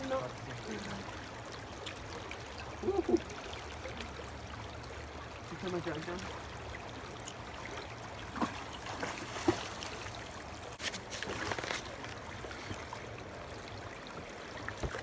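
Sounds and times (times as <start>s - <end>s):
river water flowing: 0.0s - 15.0s.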